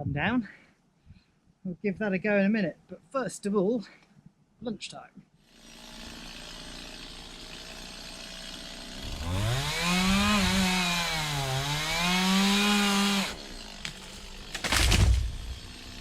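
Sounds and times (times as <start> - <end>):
chainsaw cutting wood: 5.5 - 16.0
loud rushing thump: 14.6 - 15.7.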